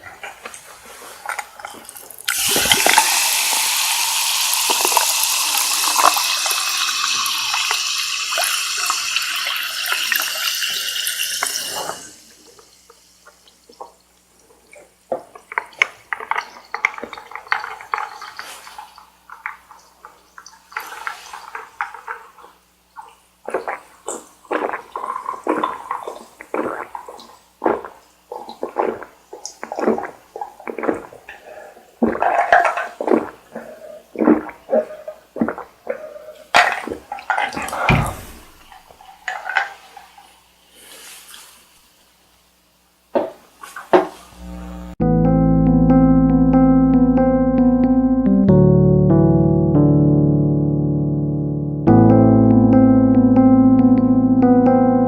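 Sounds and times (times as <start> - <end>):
eating mouth sounds: 23.0 - 36.5.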